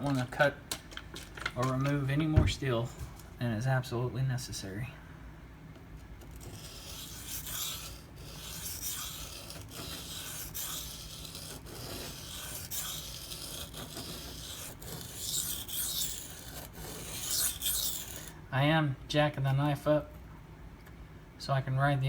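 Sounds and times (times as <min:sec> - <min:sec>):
knife scraping on sharpening stone: 0:06.4 - 0:18.3.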